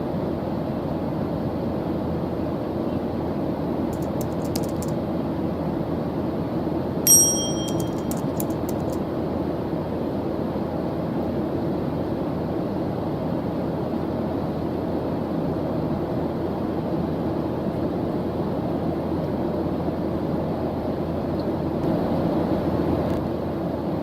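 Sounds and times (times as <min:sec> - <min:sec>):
faint light clicks: 0:03.9 - 0:04.9
bright metallic ding: 0:07.1 - 0:08.5.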